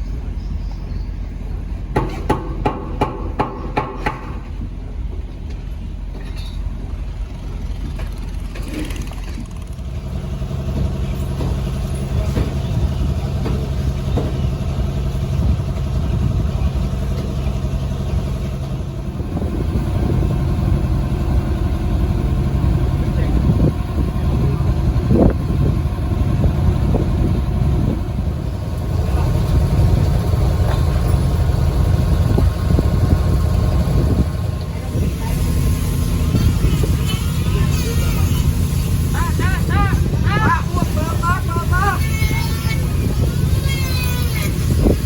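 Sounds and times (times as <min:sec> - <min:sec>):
boat engine humming: 0:00.0 - 0:45.0
sharp knocks: 0:01.9 - 0:04.6.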